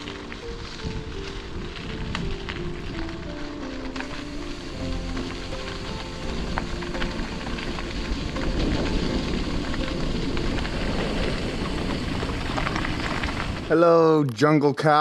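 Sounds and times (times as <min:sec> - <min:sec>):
background music: 0:00.0 - 0:12.0
low rumble: 0:00.0 - 0:13.8
bicycle tyres on wet dirt: 0:00.0 - 0:14.2
crackles and clicks: 0:00.0 - 0:14.7.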